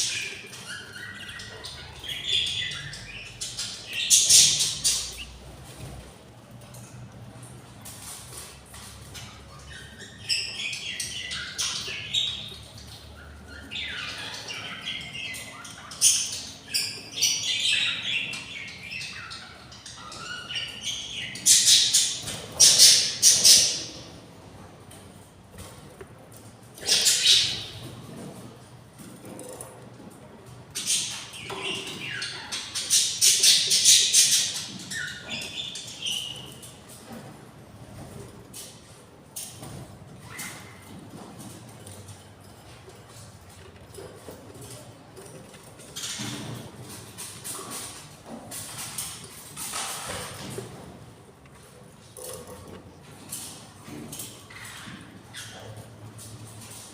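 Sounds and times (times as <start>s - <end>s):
budgerigars chirping and squawking: 0.0s - 5.9s, 9.1s - 24.1s, 26.8s - 28.4s, 30.7s - 36.8s, 54.2s - 55.9s.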